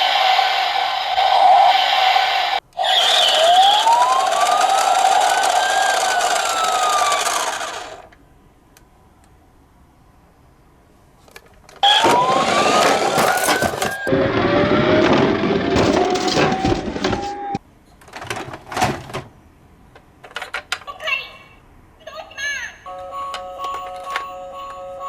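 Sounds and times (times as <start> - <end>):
lower siren climbing: 2.8 - 7.8, 11.8 - 15.4
toy siren wailing: 2.8 - 7.9, 11.8 - 14.3
loud clattering: 11.8 - 17.6.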